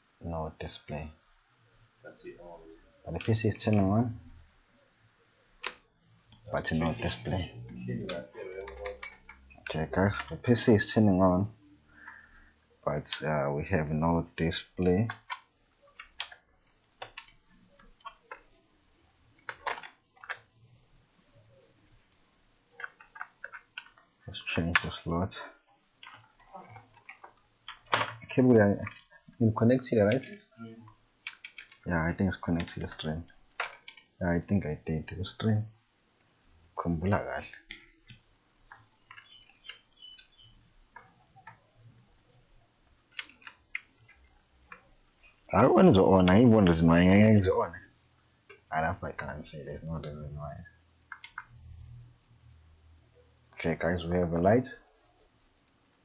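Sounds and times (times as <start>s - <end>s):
laptop plastic clicks and taps: 17.0s - 18.5s, 27.0s - 29.0s, 31.2s - 31.8s, 51.1s - 51.5s.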